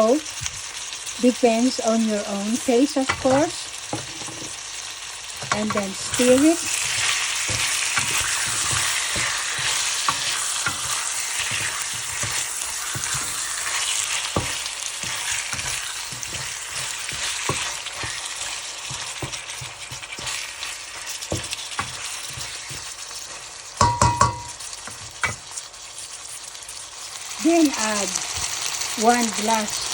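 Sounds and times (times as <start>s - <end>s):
chicken sizzling in a frying pan: 0.0s - 29.9s
spatula scraping a pan: 3.1s - 4.6s, 5.5s - 26.4s.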